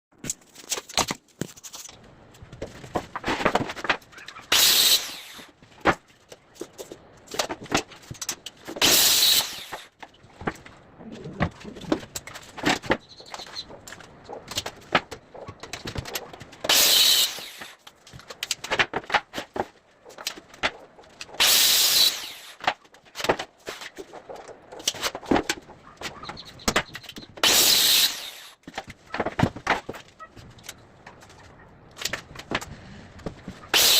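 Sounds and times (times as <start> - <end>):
loud power tool bursts: 4.5 - 5.5, 8.8 - 9.9, 16.7 - 17.8, 21.4 - 22.6, 27.4 - 28.6.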